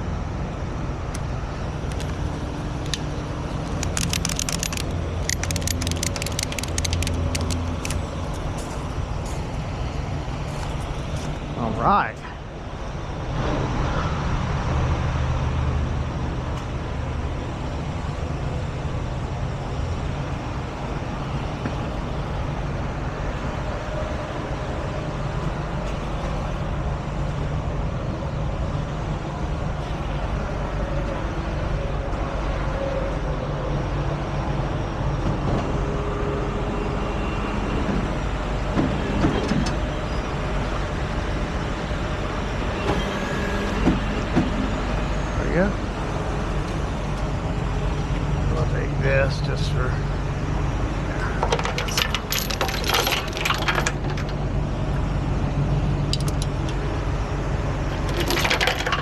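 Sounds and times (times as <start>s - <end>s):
heavy truck engine running: 0.0s - 59.0s
faint clicks: 2.8s - 8.0s.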